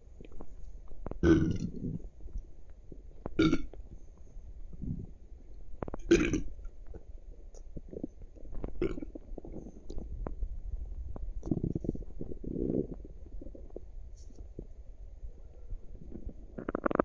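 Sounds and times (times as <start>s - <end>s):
stomach gurgling and rumbling: 0.0s - 17.0s
loud burp: 1.2s - 2.0s, 3.4s - 3.7s, 6.1s - 6.5s, 8.8s - 9.1s.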